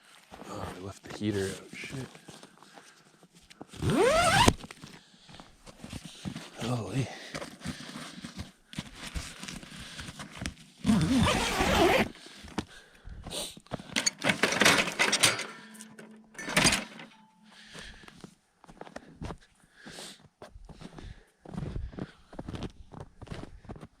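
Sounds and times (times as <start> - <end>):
clicks and knocks: 14.0 - 17.4.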